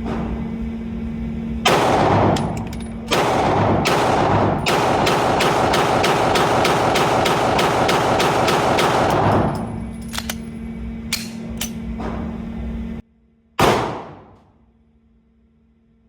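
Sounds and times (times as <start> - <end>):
pistol shots echoing: 3.1 - 9.6, 13.6 - 14.4.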